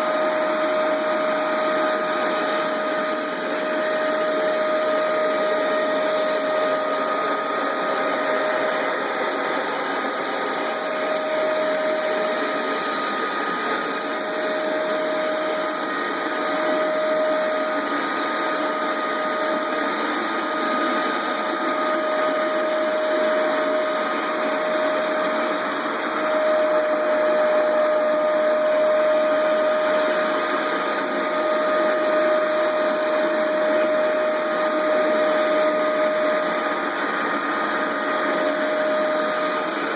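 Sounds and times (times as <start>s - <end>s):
carpet cleaner suction motor whine: 0.0s - 39.9s.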